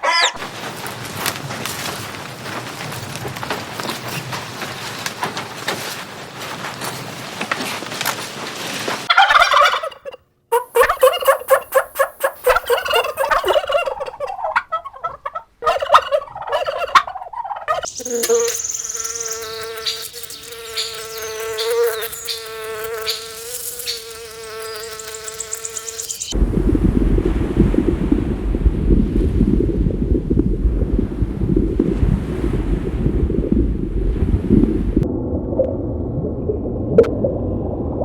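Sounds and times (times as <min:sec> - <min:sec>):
broken bird-like calls: 0:09.9 - 0:26.4
low wind-like rumble: 0:26.3 - 0:38.0.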